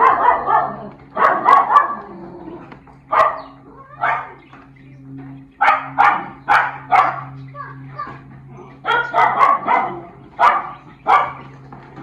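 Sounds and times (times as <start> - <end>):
dog barking: 0.0 - 2.1, 3.1 - 4.4, 5.6 - 7.4, 8.9 - 11.5
steady low hum: 0.0 - 12.0.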